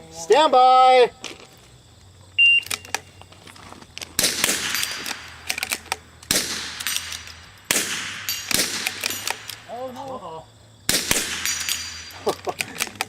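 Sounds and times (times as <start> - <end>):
rifle shots: 4.1 - 9.7, 10.9 - 12.4.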